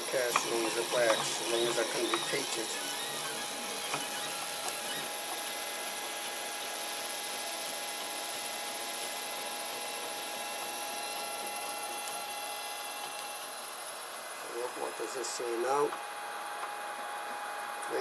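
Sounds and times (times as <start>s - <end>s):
constant hum: 0.0s - 5.5s
cooling fans whirring: 0.0s - 18.0s.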